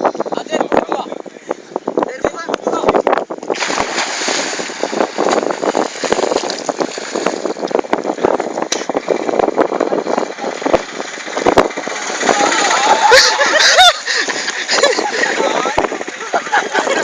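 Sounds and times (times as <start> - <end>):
wind buffeting microphone: 0.0 - 17.0
water rushing and splashing: 3.5 - 7.8.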